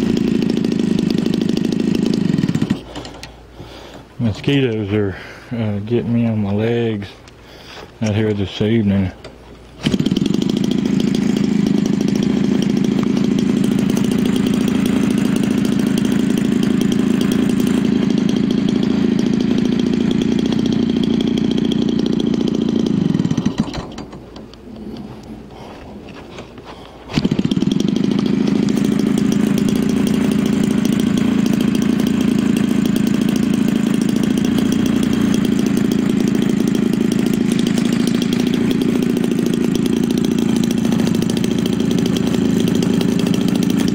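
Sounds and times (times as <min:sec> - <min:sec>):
model plane engine running: 0:27.2 - 0:43.9.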